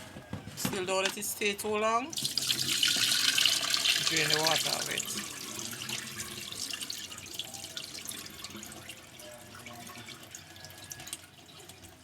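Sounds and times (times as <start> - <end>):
water draining and dripping: 2.1 - 12.0.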